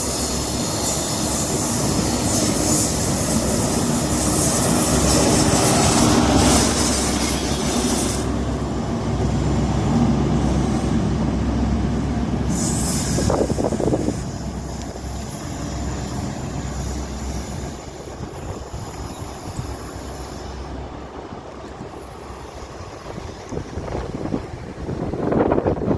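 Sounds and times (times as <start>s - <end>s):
train rumbling on track: 0.0s - 25.9s.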